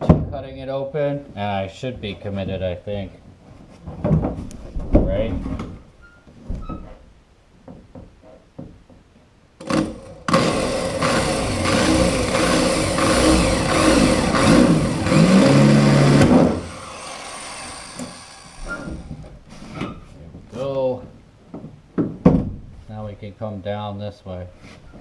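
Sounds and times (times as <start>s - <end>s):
electric power tool cutting wood: 9.6s - 19.2s.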